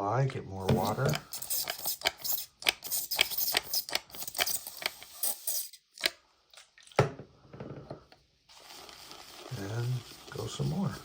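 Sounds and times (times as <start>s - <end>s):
shaving brush swishing in bowl: 8.5s - 11.0s.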